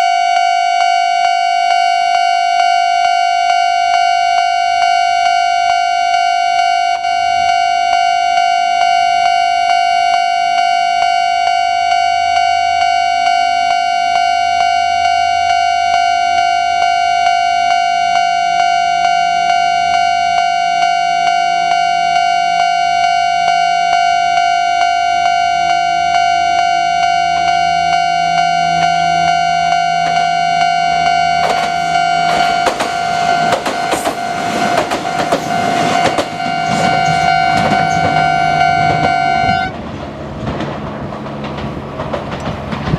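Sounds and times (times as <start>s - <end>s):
level-crossing warning bell: 0.0s - 40.4s
train wheels clattering over rails: 31.4s - 42.9s.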